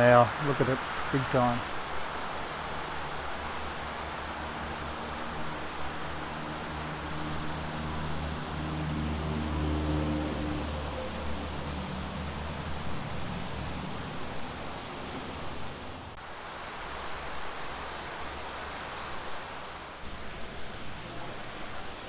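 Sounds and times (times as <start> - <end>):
heavy rain pouring: 0.0 - 22.0.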